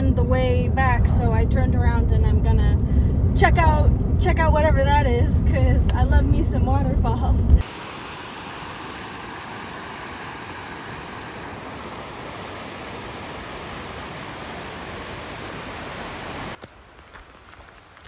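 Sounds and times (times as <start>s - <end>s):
waterfall rushing: 7.6s - 16.6s.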